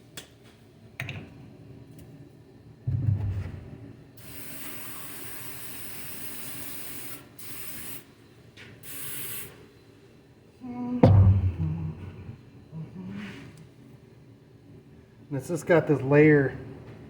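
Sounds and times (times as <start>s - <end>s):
aerosol spray hissing: 4.2s - 8.1s, 8.8s - 9.6s.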